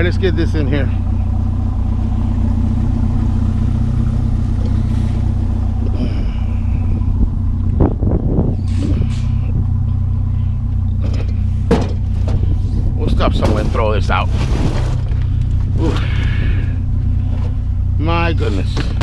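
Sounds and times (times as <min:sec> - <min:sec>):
vehicle engine running: 0:00.0 - 0:19.0
knocks and clunks: 0:10.8 - 0:16.1, 0:18.4 - 0:19.0.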